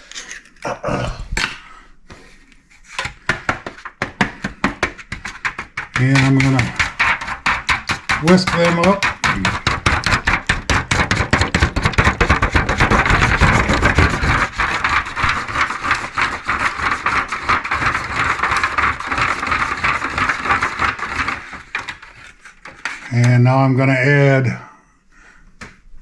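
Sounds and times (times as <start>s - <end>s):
eggs whisked in a bowl: 3.0s - 23.1s.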